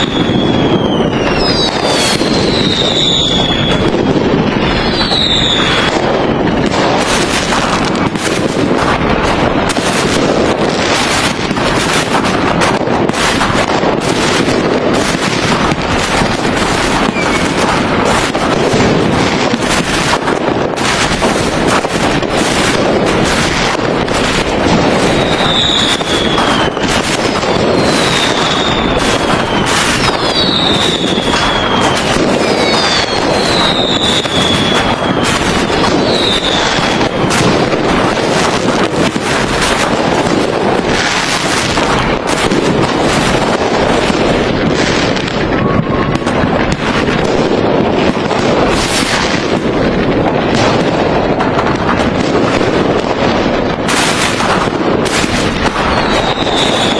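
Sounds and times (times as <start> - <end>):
falling firework whistles: 0.0 - 8.2, 14.3 - 18.5, 22.5 - 37.7, 55.1 - 56.9
fireworks bangs and crackling: 0.0 - 56.9.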